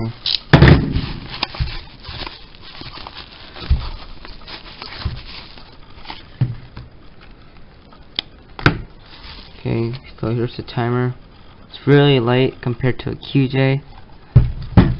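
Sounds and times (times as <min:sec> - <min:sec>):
packaging rustling: 0:00.0 - 0:07.7, 0:09.0 - 0:10.4.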